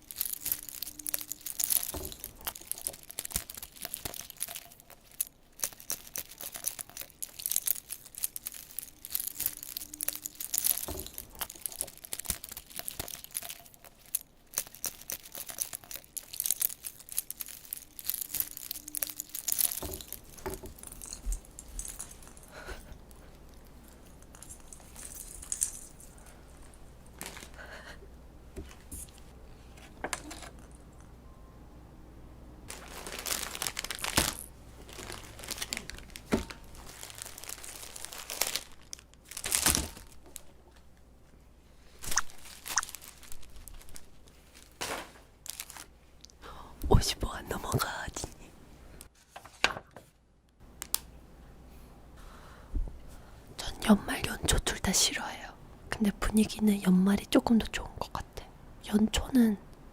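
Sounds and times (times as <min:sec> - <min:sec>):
crinkly packaging rustling: 0:00.0 - 0:31.0, 0:32.7 - 0:41.0, 0:41.8 - 0:48.4.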